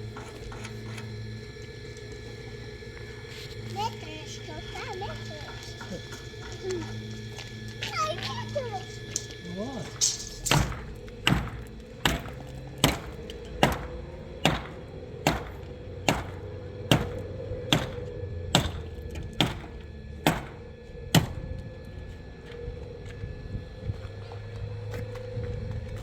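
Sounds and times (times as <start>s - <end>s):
faint steady hum: 0.0s - 26.0s
hard strikes: 7.8s - 21.4s.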